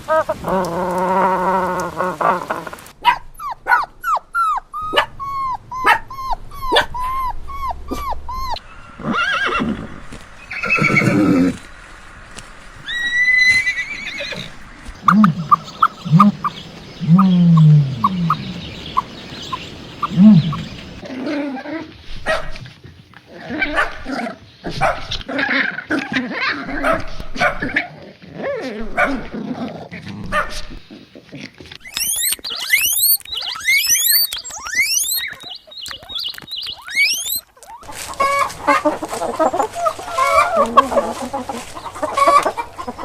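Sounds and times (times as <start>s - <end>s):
loud noisy animal calls: 8.4s - 19.2s, 31.9s - 35.5s
rising whistle: 12.8s - 14.6s
quick short animal chirps: 31.8s - 36.2s.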